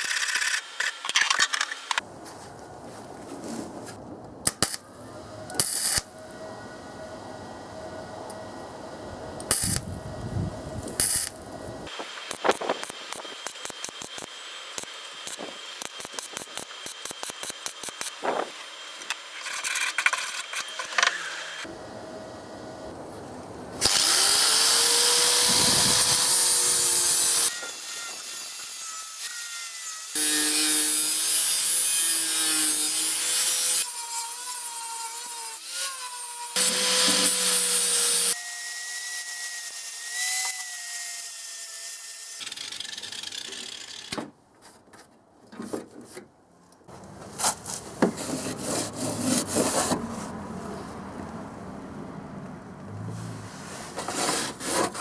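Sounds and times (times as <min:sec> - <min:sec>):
welder crackling: 0:04.4 - 0:04.8, 0:05.6 - 0:06.2, 0:09.4 - 0:10.0, 0:10.9 - 0:19.4
power grinder spinning: 0:11.0 - 0:21.7, 0:23.8 - 0:38.4, 0:41.4 - 0:44.1.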